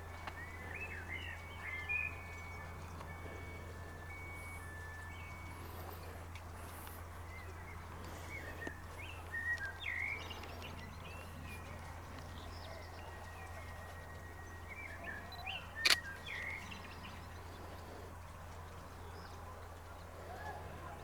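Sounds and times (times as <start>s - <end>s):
small birds chirping: 0.0s - 21.0s
sharp click: 15.8s - 16.1s.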